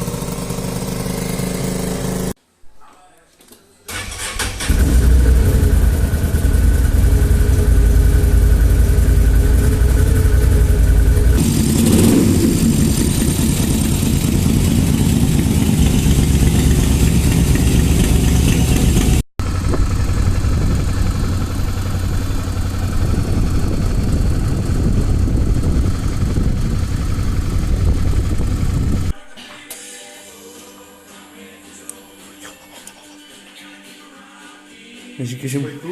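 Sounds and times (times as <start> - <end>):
motorcycle engine revving: 0.0 - 2.4, 4.0 - 29.1
engine running steadily: 4.7 - 29.1.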